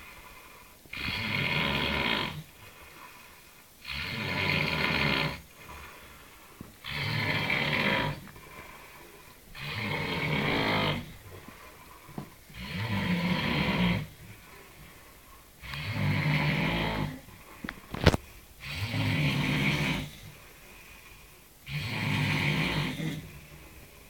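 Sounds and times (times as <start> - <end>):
man snoring: 0.9 - 2.5, 3.8 - 5.4, 6.8 - 8.3, 9.5 - 11.3, 12.5 - 14.2, 15.6 - 20.4, 21.6 - 23.6.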